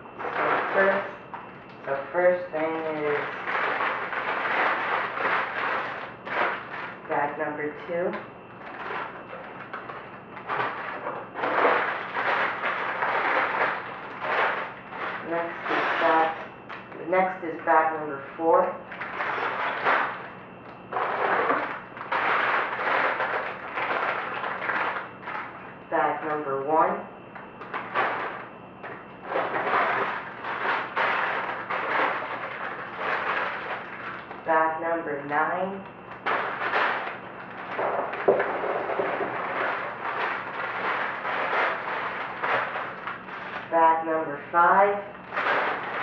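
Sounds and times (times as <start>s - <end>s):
plastic bags crinkling: 0.0s - 17.3s, 18.6s - 26.4s, 27.3s - 34.5s, 35.8s - 43.7s, 44.8s - 46.0s
plastic bricks rattling: 0.2s - 7.1s, 8.1s - 16.8s, 18.9s - 20.3s, 20.9s - 25.5s, 27.6s - 34.4s, 36.1s - 43.7s, 45.2s - 46.0s.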